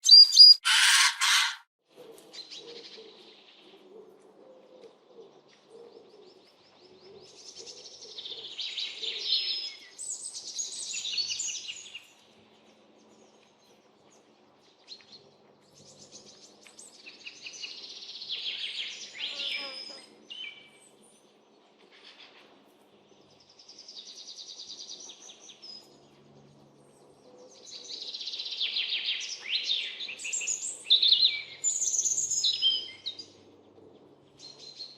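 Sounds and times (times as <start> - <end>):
songbirds chirping and singing: 0.0 - 1.6, 23.2 - 34.9.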